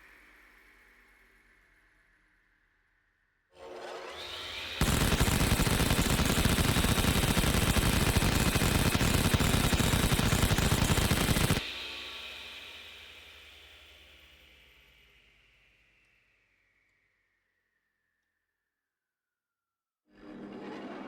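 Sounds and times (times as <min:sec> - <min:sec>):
rotary cannon firing: 0:04.8 - 0:11.6
spinning barrels whining: 0:04.8 - 0:11.6.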